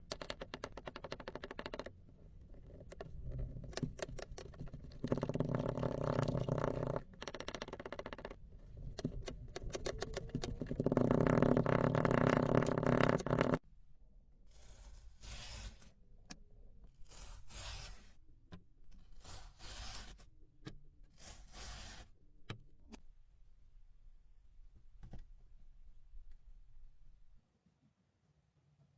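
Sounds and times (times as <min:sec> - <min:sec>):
clay clicking and crackling: 0:00.0 - 0:13.6.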